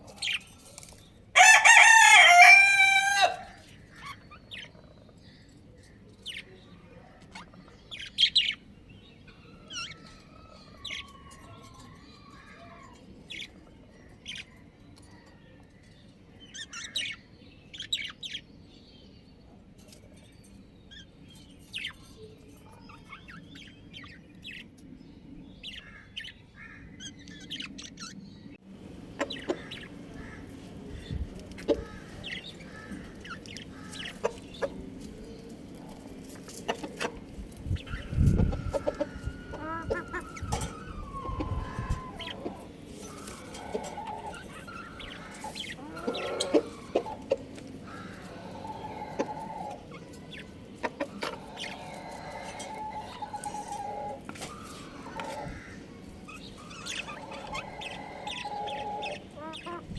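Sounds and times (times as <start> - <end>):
budgerigars chirping: 7.2 - 11.9, 29.0 - 59.9
bird warbling: 36.4 - 59.9.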